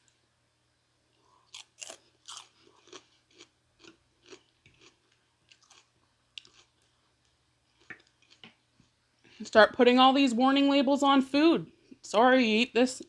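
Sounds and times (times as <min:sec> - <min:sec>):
person chewing food: 0:01.2 - 0:09.0.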